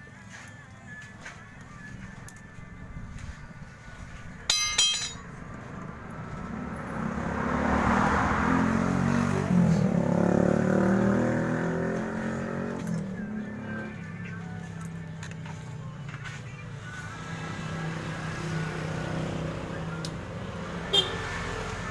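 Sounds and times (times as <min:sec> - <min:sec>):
sharp metallic clink: 0:04.5 - 0:05.4
motor vehicle passing by: 0:05.4 - 0:14.7, 0:15.6 - 0:21.9.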